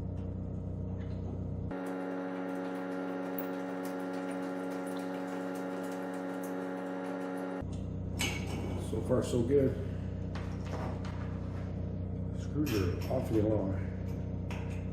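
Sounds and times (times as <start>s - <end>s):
low steady hum: 0.0s - 14.9s
small electric motor whining: 1.7s - 7.6s.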